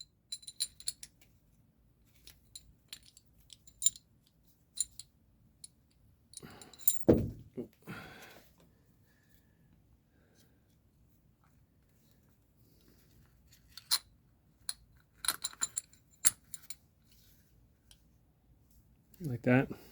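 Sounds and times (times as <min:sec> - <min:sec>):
seatbelt hardware clinking: 0:06.4 - 0:07.4
thump with rustling: 0:07.0 - 0:07.6.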